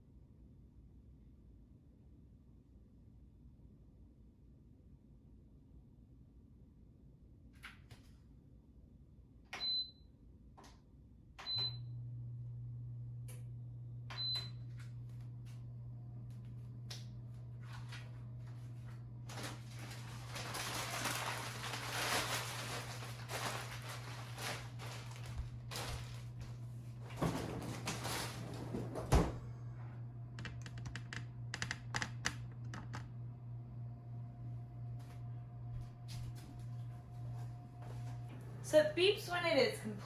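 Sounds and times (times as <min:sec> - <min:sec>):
convection fan humming: 0:11.4 - 0:40.0.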